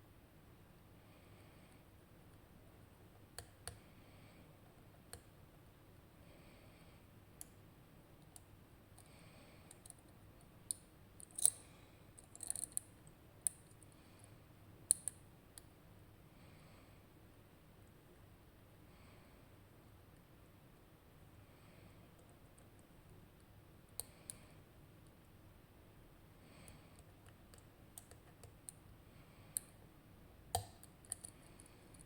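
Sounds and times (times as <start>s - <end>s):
lock pick metallic clicks: 11.2s - 11.6s.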